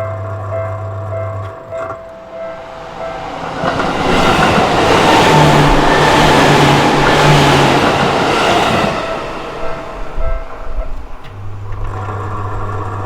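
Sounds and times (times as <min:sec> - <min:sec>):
electric train passing: 0:01.8 - 0:12.9
low hum: 0:02.2 - 0:11.7.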